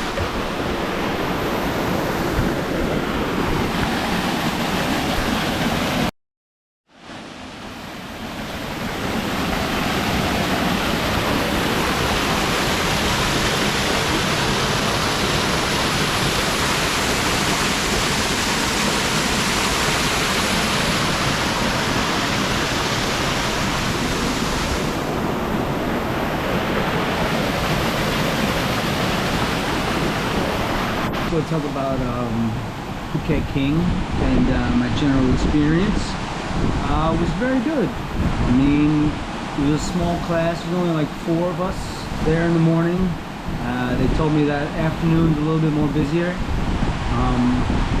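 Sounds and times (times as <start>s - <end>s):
waterfall rushing: 7.0s - 31.9s.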